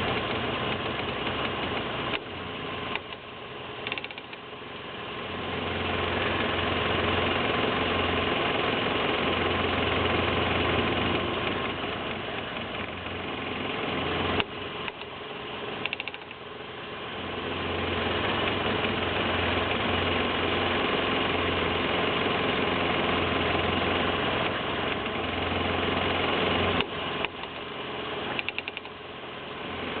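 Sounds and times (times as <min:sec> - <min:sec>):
rapid rattle: 0:03.8 - 0:04.4, 0:15.8 - 0:16.4, 0:28.4 - 0:29.0.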